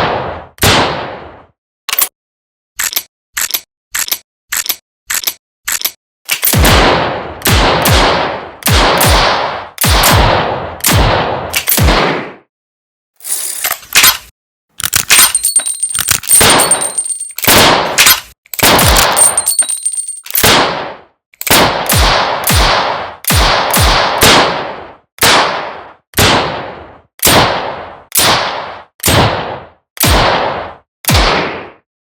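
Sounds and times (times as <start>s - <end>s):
revolver gunshots: 16.3s - 19.6s, 27.3s - 31.7s.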